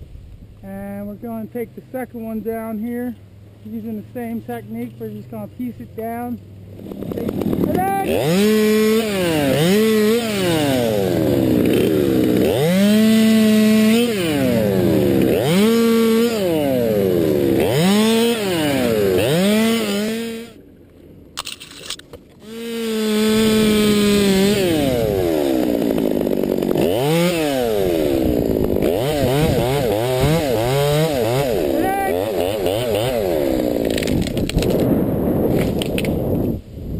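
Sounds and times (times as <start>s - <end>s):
chainsaw revving while cutting: 6.8s - 20.6s, 22.4s - 34.4s.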